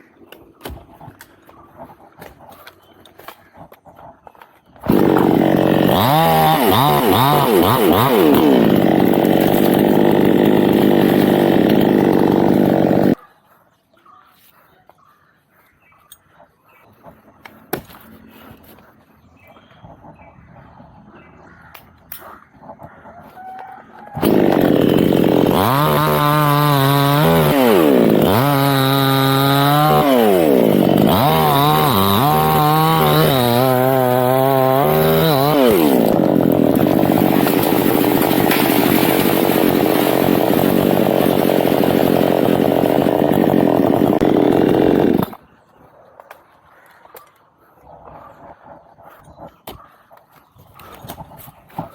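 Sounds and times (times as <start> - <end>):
chainsaw revving and cutting wood: 0.6 - 13.2, 23.9 - 45.6.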